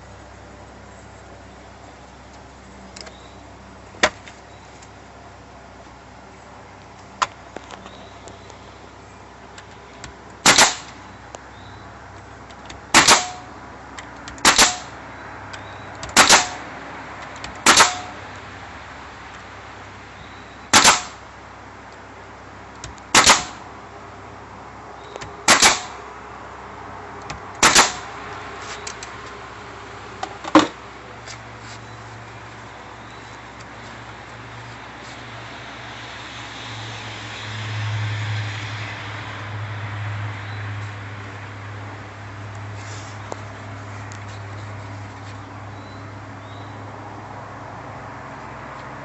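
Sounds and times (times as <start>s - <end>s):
firework shells firing: 10.5s - 11.0s, 12.9s - 13.5s, 14.4s - 15.0s, 20.7s - 21.2s, 23.1s - 23.6s, 25.4s - 26.0s, 27.6s - 28.1s.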